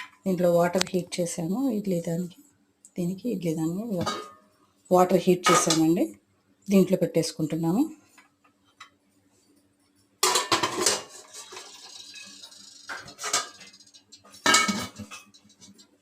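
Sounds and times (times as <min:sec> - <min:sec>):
metal pot clanking: 0:04.0 - 0:04.5, 0:05.4 - 0:06.0, 0:10.2 - 0:16.0.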